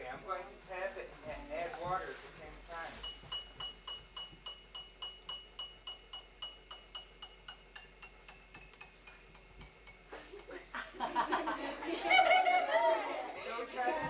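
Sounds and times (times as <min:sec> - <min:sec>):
glass cup tapped ringing: 0:03.0 - 0:10.6.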